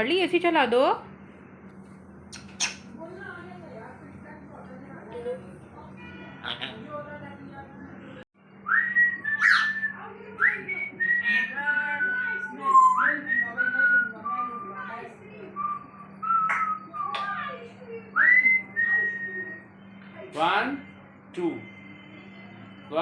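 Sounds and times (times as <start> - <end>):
steady low hum: 0.0 - 22.9
parrot squeaks: 2.3 - 2.9, 6.4 - 6.9, 9.3 - 10.6
parrot whistling: 2.3 - 2.9, 8.6 - 14.8, 18.1 - 19.6.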